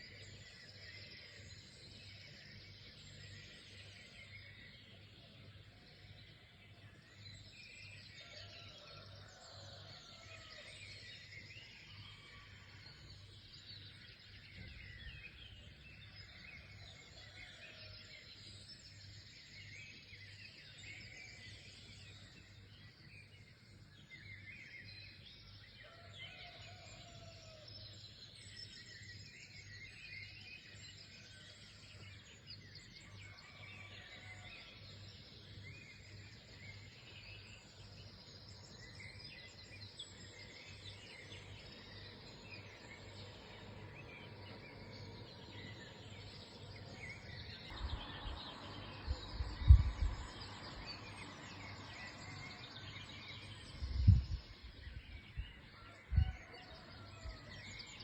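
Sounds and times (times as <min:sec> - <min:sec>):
songbirds chirping and trilling: 0:00.0 - 0:58.0
low pulsing hum: 0:47.7 - 0:50.4.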